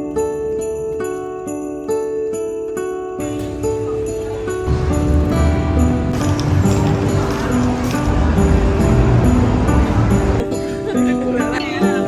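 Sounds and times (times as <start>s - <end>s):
music with sustained notes: 0.0s - 12.0s
heavy bass: 3.4s - 10.4s.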